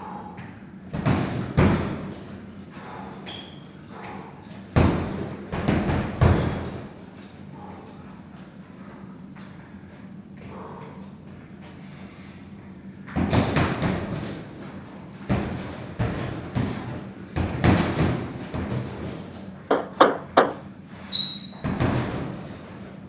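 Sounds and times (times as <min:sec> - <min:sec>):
punches hitting punching bag: 0:00.9 - 0:02.4, 0:04.7 - 0:07.0, 0:13.2 - 0:14.6, 0:15.2 - 0:20.6.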